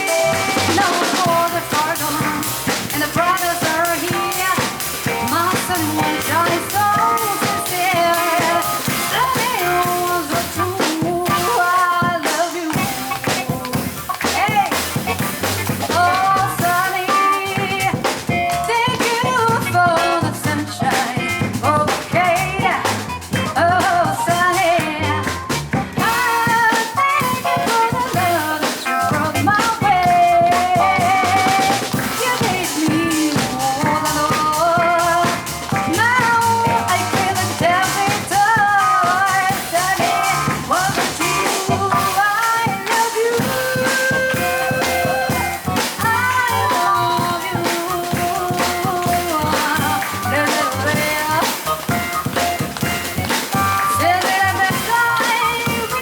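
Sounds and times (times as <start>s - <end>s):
bending melody line: 0.0s - 20.2s, 21.6s - 56.0s
drum kit with rimshots: 0.0s - 56.0s
piano: 0.0s - 56.0s
double bass: 12.8s - 17.0s, 17.6s - 26.4s, 28.0s - 42.3s, 43.4s - 56.0s.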